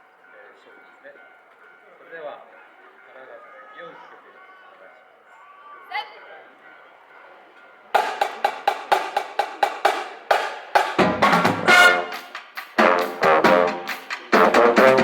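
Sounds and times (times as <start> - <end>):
brass chords: 8.0 - 15.0
sharp percussion hits: 8.0 - 15.0.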